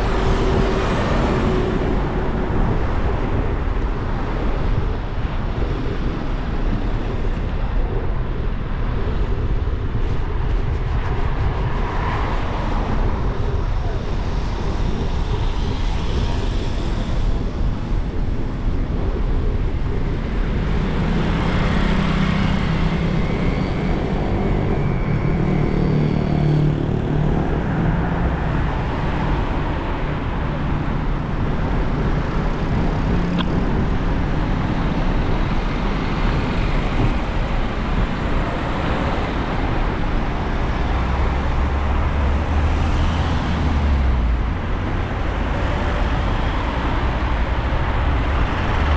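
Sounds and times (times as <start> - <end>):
engine hum: 19.0 - 48.9
vehicles passing on wet road: 25.3 - 33.5, 35.8 - 48.9.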